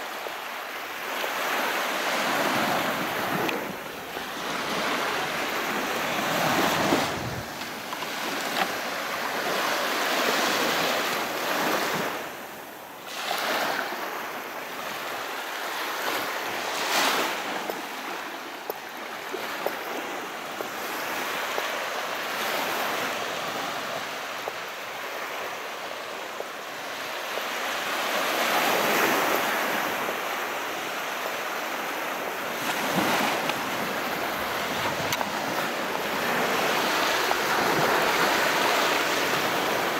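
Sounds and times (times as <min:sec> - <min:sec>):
sea waves washing in: 0:00.4 - 0:39.9.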